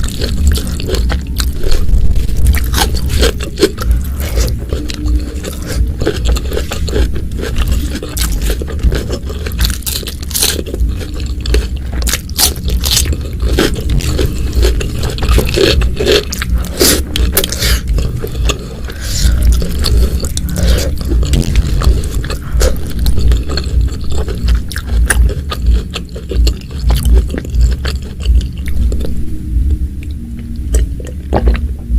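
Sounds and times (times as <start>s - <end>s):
chewing with wet mouth clicks: 0.0s - 29.2s
low thump of jaw working: 21.0s - 25.2s.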